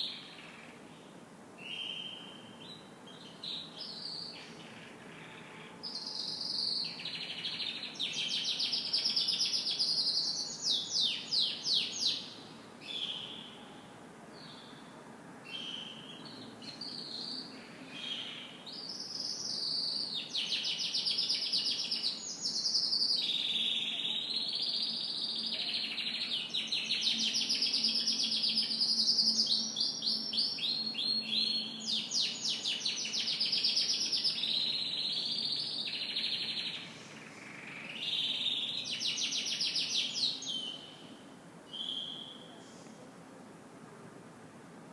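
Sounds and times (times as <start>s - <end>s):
canary singing trills: 41.7s - 42.5s.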